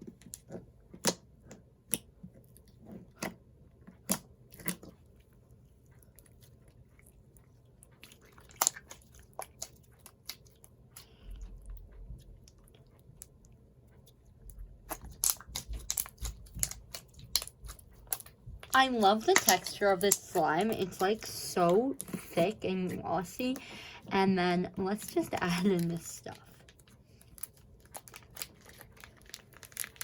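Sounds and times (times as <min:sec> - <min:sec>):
slime squishing with pops and clicks: 0:00.0 - 0:05.2, 0:07.9 - 0:22.4, 0:26.7 - 0:30.0.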